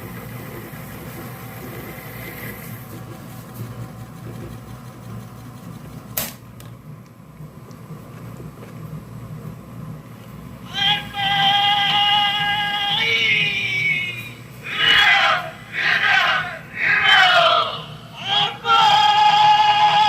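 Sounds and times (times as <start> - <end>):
cassette mechanism and amplifier hum: 0.0 - 20.0
sharp click: 6.2 - 6.7.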